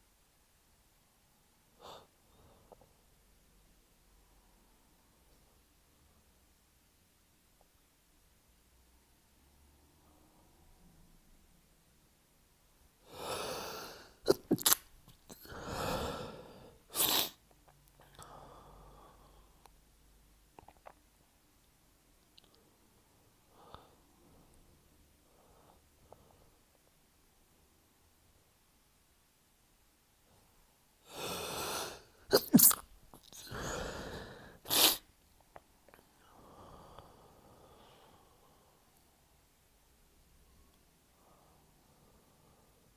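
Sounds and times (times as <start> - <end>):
noisy breath in: 13.0 - 14.2, 31.0 - 32.3, 33.4 - 35.0, 36.2 - 38.9, 41.1 - 42.9
man's stifled sneezes: 14.2 - 14.8, 31.4 - 33.9, 34.7 - 35.1
long inhale: 33.4 - 35.0, 36.2 - 38.8.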